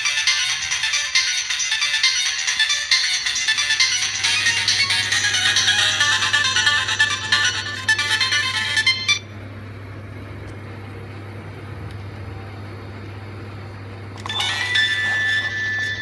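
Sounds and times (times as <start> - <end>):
high held ringtone tone: 0.0 - 9.2, 14.2 - 16.0
phone ringtone: 0.0 - 9.3, 14.2 - 16.0
steady low hum: 0.0 - 16.0.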